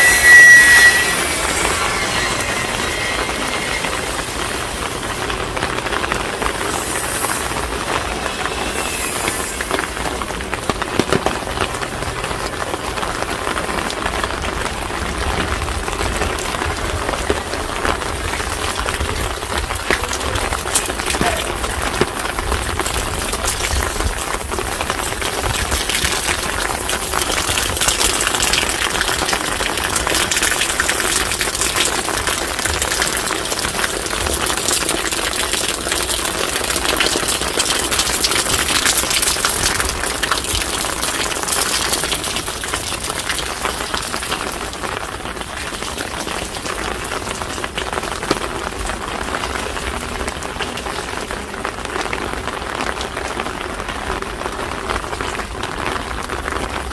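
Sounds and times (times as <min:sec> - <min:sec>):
low rumble: 0:00.0 - 0:13.3
steady rain falling: 0:00.0 - 0:56.9.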